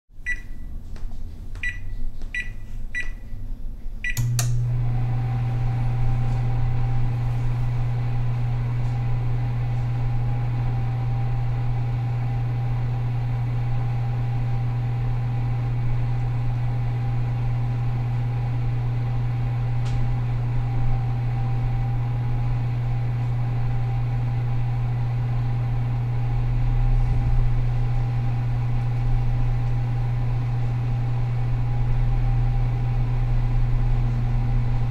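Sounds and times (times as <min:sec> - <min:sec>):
microwave keypad beeps: 0:00.2 - 0:00.7, 0:01.6 - 0:03.3
microwave humming: 0:00.2 - 0:00.9, 0:01.5 - 0:34.9
microwave click: 0:04.0 - 0:05.5.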